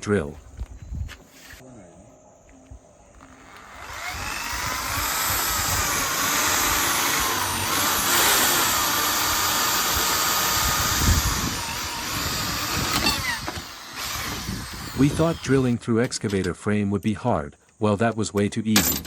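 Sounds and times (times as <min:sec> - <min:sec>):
electric drill boring through metal: 0:03.2 - 0:16.2.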